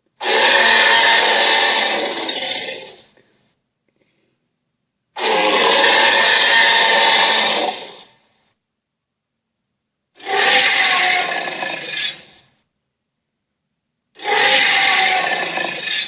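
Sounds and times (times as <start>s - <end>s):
creature roar: 0.2s - 3.1s, 5.2s - 8.1s, 10.2s - 12.4s, 14.2s - 16.0s.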